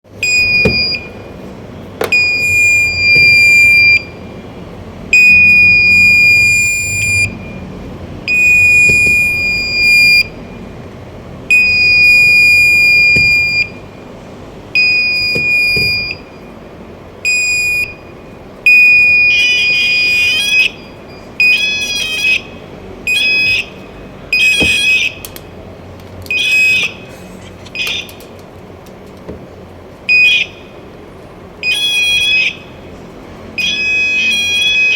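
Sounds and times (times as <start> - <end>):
metal detector alarm tones: 0.2 - 1.3, 2.0 - 4.2, 5.1 - 7.7, 8.3 - 10.4, 11.5 - 13.9, 14.8 - 16.5, 17.2 - 18.1, 18.7 - 22.5, 23.1 - 25.3, 26.3 - 27.0, 27.7 - 28.2, 31.6 - 32.6, 33.6 - 34.9.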